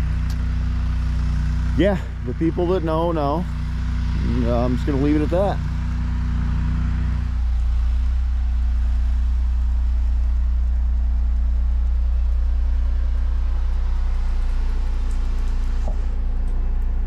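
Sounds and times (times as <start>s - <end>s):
engine droning steadily: 0.0s - 17.0s.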